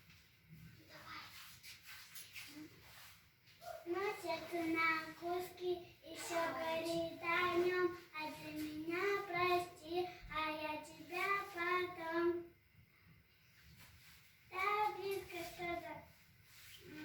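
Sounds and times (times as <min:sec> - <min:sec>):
girl singing: 0:03.8 - 0:12.5, 0:14.6 - 0:16.1.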